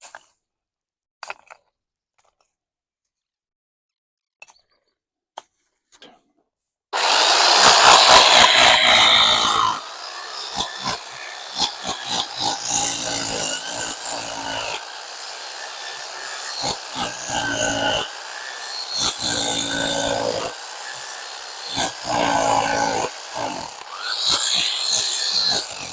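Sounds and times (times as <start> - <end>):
power tool cutting into stone wall: 7.0 - 25.9.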